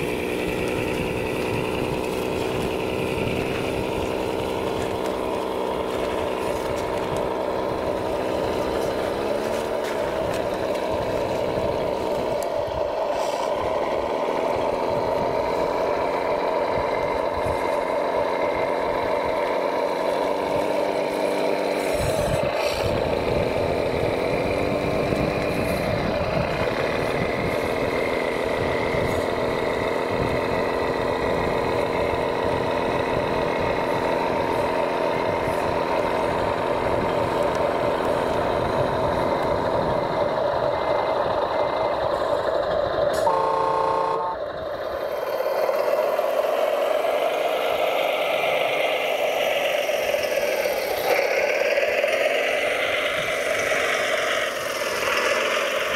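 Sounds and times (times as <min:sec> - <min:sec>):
short horn-like beep: 0:43.2 - 0:44.4.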